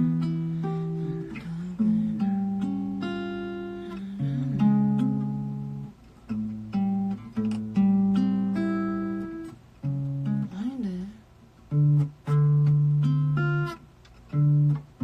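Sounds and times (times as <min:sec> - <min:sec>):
acoustic guitar chords: 0:00.0 - 0:15.0.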